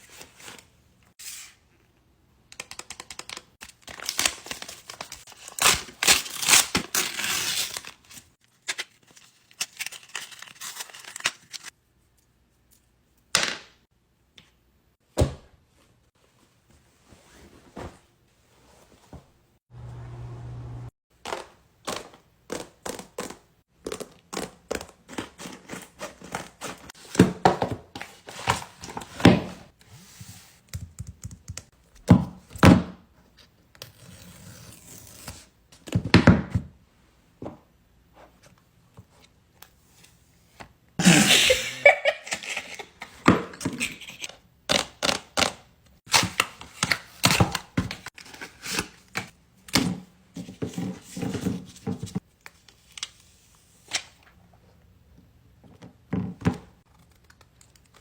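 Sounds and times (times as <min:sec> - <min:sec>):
paper crinkling: 0:03.6 - 0:11.7
paper tearing: 0:04.0 - 0:08.2.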